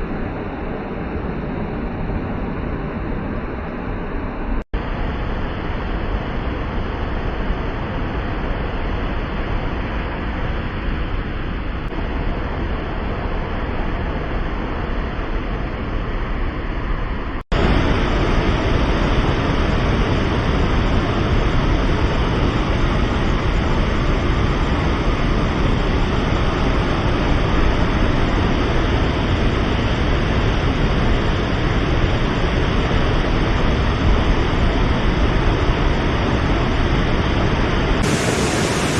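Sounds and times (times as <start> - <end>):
waterfall rushing: 38.0 - 38.9.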